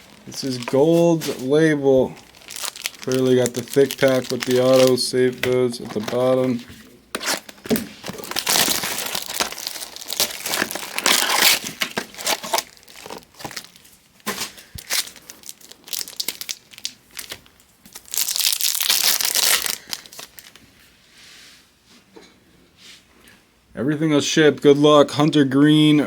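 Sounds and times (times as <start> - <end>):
wrappers torn and crumpled: 0.0 - 20.6.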